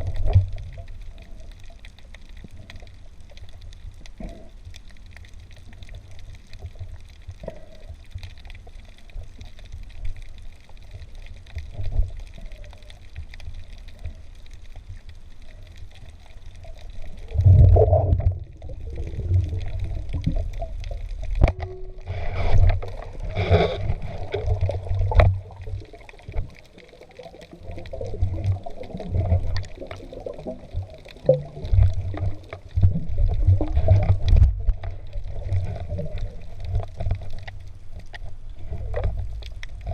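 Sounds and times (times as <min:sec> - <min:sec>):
underwater bubbling: 0:00.0 - 0:39.9
low rumble and thumps: 0:17.1 - 0:26.6, 0:27.6 - 0:39.9.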